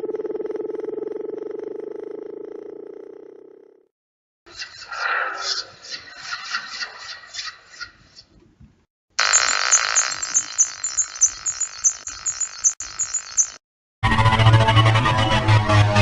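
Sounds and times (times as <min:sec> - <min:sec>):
electronic malfunction deep hum: 0:09.2 - 0:13.6
rapid high electronic beeps: 0:09.2 - 0:13.6.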